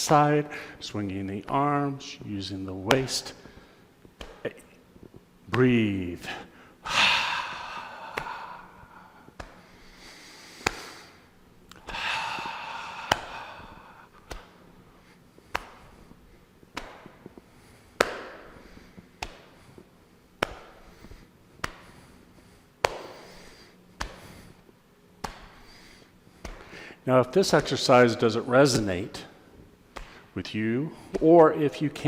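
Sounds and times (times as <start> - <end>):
hands slapping body: 2.9 - 5.8, 8.0 - 14.7, 15.4 - 28.0, 28.7 - 29.3, 29.9 - 30.3.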